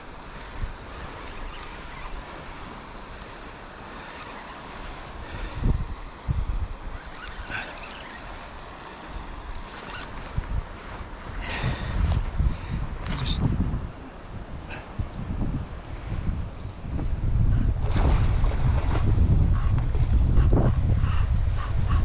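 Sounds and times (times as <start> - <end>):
river rushing: 0.0 - 12.1.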